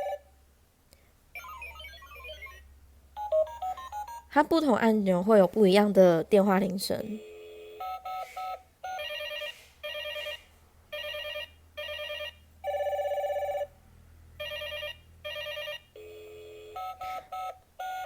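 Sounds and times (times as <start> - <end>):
electronic ringtone trill: 1.4 - 4.3, 7.2 - 13.7, 14.4 - 18.0.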